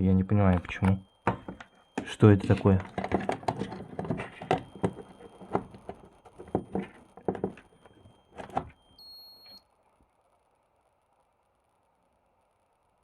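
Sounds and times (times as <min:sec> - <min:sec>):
handling clicks and knocks: 0:00.5 - 0:08.8
battery charger whistling: 0:08.4 - 0:09.6
short high beep: 0:09.0 - 0:09.6.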